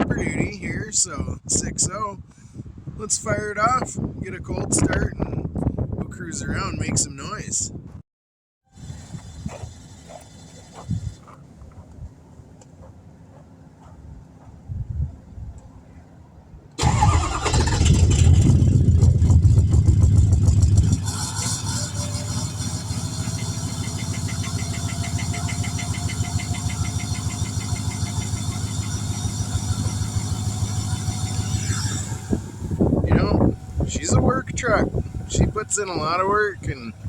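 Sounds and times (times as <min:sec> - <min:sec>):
faint turbo whine: 0:08.7 - 0:37.0
diesel engine idling with clatter: 0:08.8 - 0:14.6, 0:16.8 - 0:37.0.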